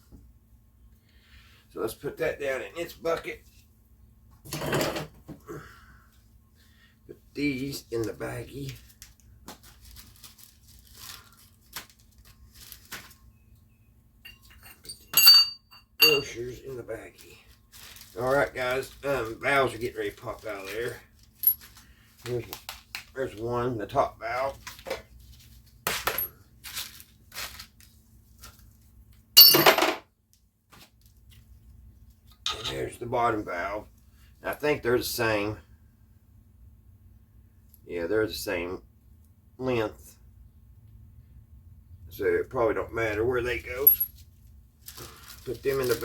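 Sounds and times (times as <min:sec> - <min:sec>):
plastic bag crinkling: 0:08.6 - 0:13.2, 0:17.1 - 0:22.9, 0:26.6 - 0:28.7, 0:44.8 - 0:46.0
small metal parts clinking: 0:14.3 - 0:16.4, 0:20.7 - 0:21.8, 0:29.4 - 0:30.0, 0:43.8 - 0:44.2.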